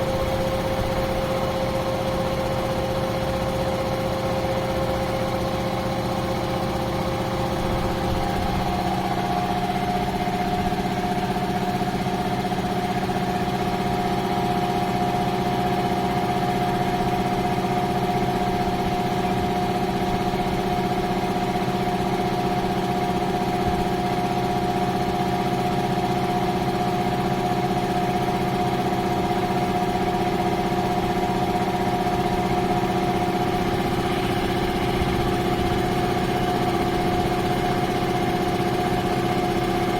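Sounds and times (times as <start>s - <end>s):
air compressor humming: 0.0s - 12.3s, 30.9s - 39.9s.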